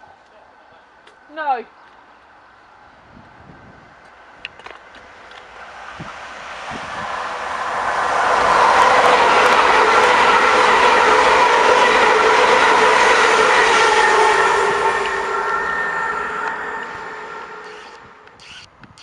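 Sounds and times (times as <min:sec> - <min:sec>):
train rail and wheel noise: 0:00.0 - 0:19.0
steady whining tones: 0:08.4 - 0:18.7.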